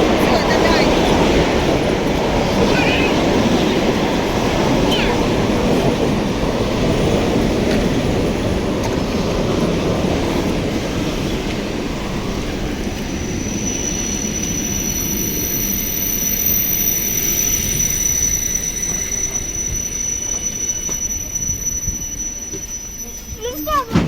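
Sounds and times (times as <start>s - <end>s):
electric train rumbling on rails: 0.0s - 24.0s
high-pitched squeal: 13.2s - 23.9s.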